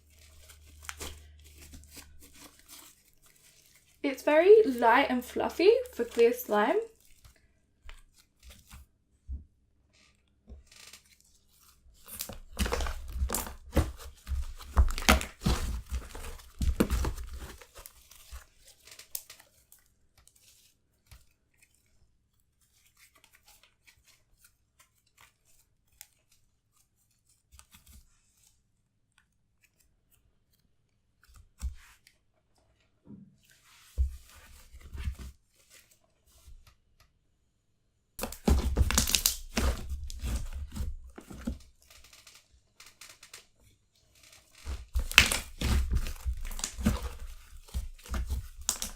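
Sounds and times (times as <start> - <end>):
slime crackling and popping: 12.1 - 18.0, 38.2 - 40.8, 44.6 - 48.9.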